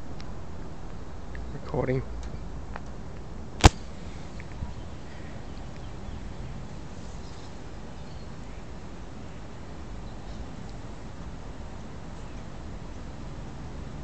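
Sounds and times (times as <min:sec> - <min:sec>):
sharp click: 0:03.6 - 0:03.9.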